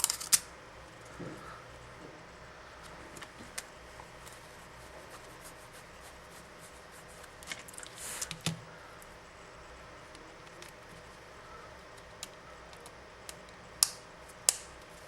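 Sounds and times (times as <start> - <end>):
sharp plastic snap: 12.8 - 14.8.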